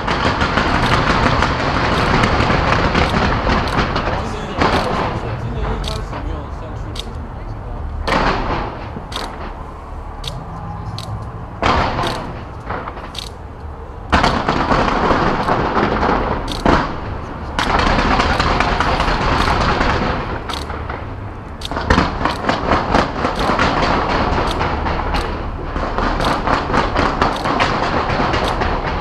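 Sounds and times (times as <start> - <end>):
fireworks bangs and booms: 0.0 - 6.2, 14.1 - 29.0
constant rumble: 0.0 - 29.0.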